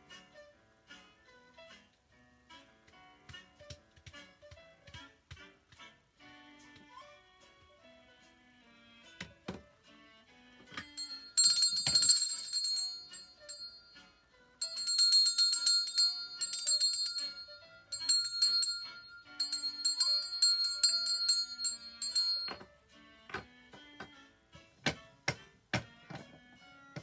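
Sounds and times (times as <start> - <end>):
music: 0.0 - 27.0
bells jingling: 10.8 - 14.0, 14.6 - 22.6.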